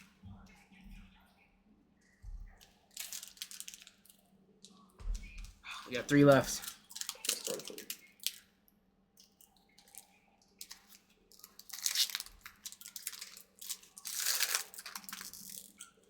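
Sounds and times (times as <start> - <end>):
foil wrapper crinkling and tearing: 2.6 - 4.2, 6.0 - 8.5, 9.4 - 16.0.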